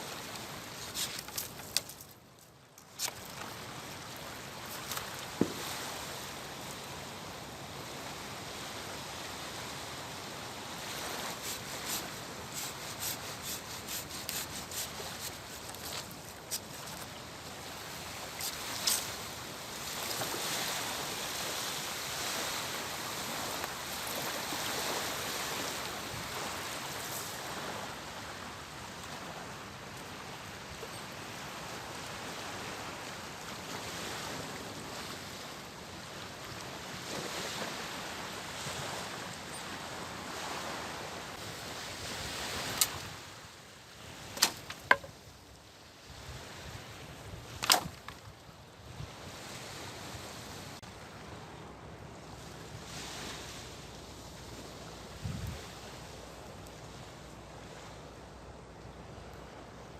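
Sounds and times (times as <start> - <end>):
sharp knocks: 44.4 - 45.1.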